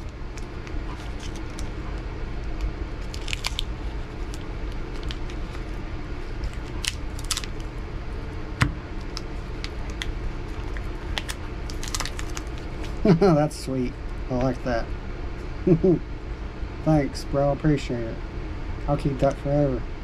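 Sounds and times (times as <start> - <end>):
mailer crinkling and rustling: 0.0 - 1.7, 3.0 - 7.6, 9.0 - 13.0
steady low hum: 0.0 - 20.0.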